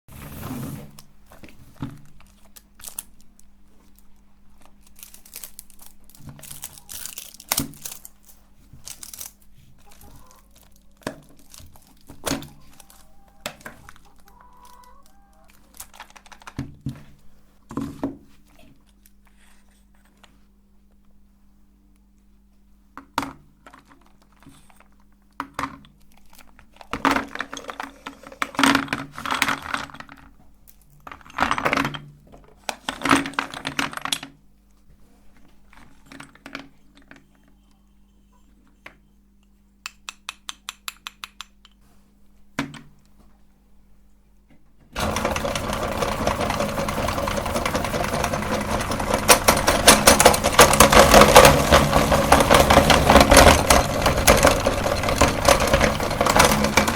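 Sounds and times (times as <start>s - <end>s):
objects clunking and clattering: 23.1s - 30.5s, 44.5s - 56.9s
electric meat grinder crunching: 45.0s - 56.9s.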